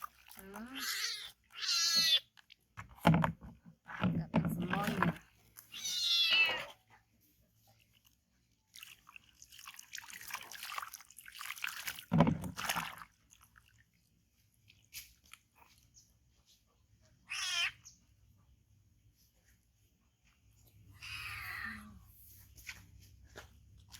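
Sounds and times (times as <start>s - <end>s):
small animal high-pitched call: 17.3s - 18.0s.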